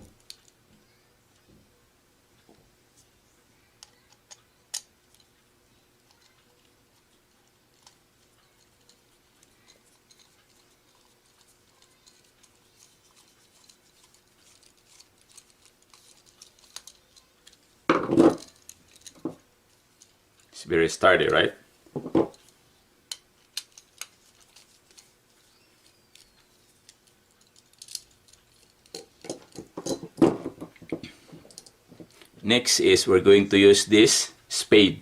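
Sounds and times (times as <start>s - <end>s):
small metal clicks and ticks: 3.8s - 5.4s, 6.0s - 17.8s, 18.4s - 20.6s, 22.4s - 30.1s, 30.7s - 32.3s.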